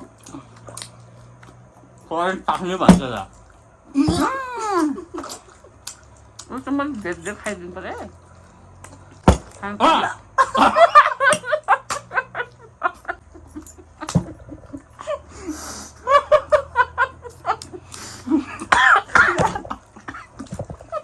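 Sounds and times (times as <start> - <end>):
people laughing: 4.0 - 5.3, 9.8 - 21.0.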